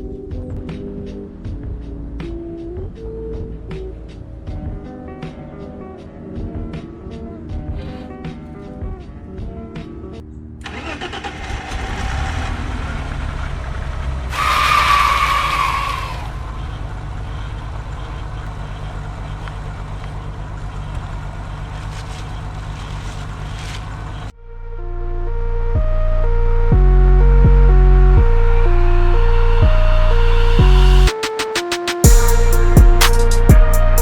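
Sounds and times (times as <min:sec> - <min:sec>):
car engine starting and idling: 0:10.6 - 0:31.1.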